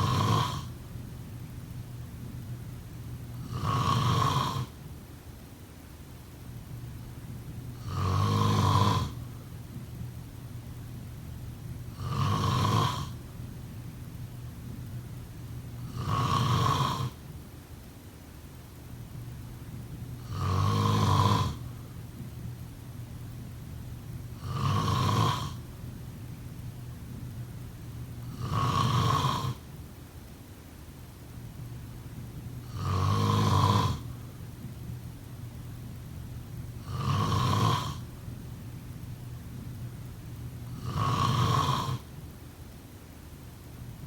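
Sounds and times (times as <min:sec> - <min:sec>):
person snoring: 0:00.0 - 0:00.8, 0:03.4 - 0:04.8, 0:07.8 - 0:09.2, 0:11.9 - 0:13.2, 0:15.8 - 0:17.2, 0:20.2 - 0:21.6, 0:24.4 - 0:25.6, 0:28.2 - 0:29.6, 0:32.6 - 0:34.1, 0:36.8 - 0:38.0, 0:40.7 - 0:42.1.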